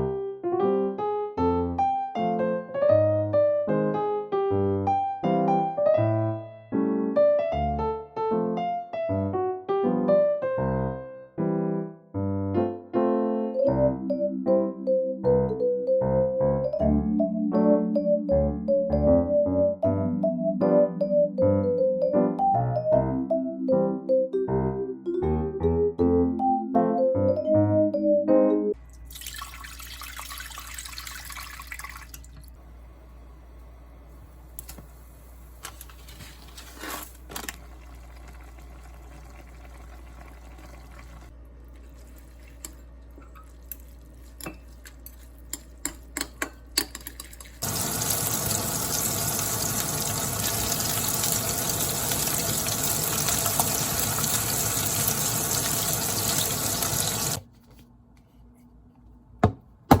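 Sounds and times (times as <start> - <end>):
water running into sink: 29.1 - 32.6, 37.6 - 44.4, 47.2 - 57.4.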